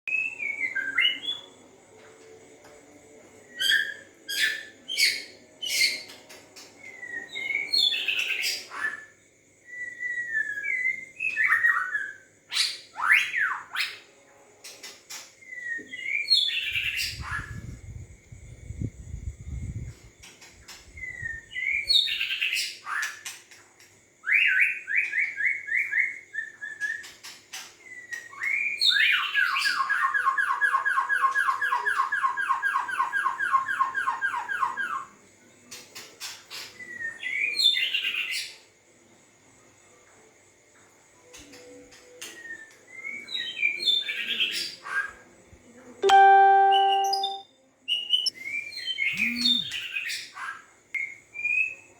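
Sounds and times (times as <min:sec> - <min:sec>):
bird singing whistles and trills: 0:00.1 - 0:01.6, 0:03.4 - 0:06.2, 0:06.8 - 0:14.1, 0:15.4 - 0:17.8, 0:20.9 - 0:23.2, 0:24.2 - 0:35.0, 0:36.5 - 0:38.5, 0:42.2 - 0:45.1, 0:46.0 - 0:50.3, 0:51.0 - 0:51.9.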